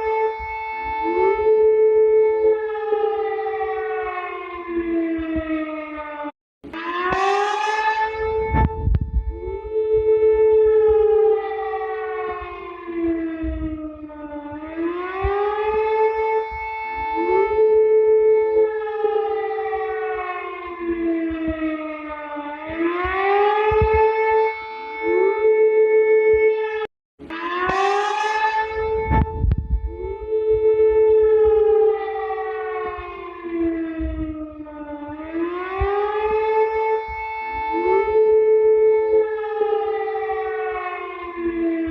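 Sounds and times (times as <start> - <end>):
emergency alarm siren wailing: 0.0 - 41.9
low thumps: 8.2 - 11.1, 28.8 - 31.8, 32.8 - 36.0.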